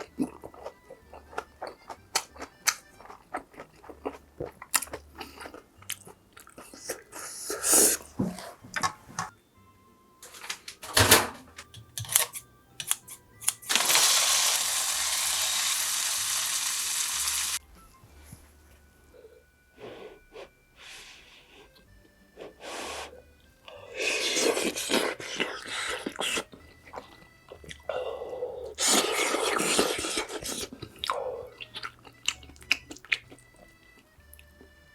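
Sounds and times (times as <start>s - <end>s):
crunchy moist eating noise: 13.7s - 17.6s, 23.8s - 33.7s.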